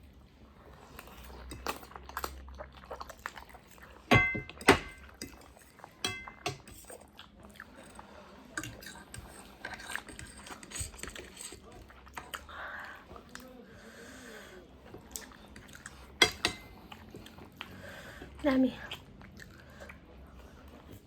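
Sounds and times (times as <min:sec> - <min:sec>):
eating sounds: 0:00.5 - 0:04.1, 0:05.0 - 0:21.0
utensils clinking against dish: 0:04.1 - 0:07.1, 0:08.6 - 0:12.3, 0:15.6 - 0:16.8.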